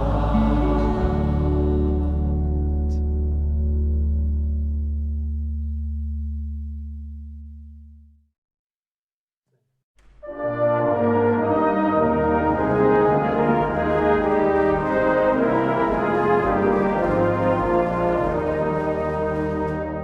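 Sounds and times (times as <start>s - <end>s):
brass ensemble chords: 0.0s - 4.6s, 10.3s - 20.0s.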